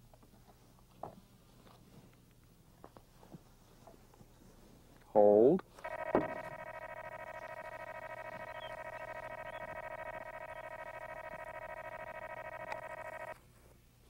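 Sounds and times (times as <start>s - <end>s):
buzzy electronic tone: 5.8s - 13.4s.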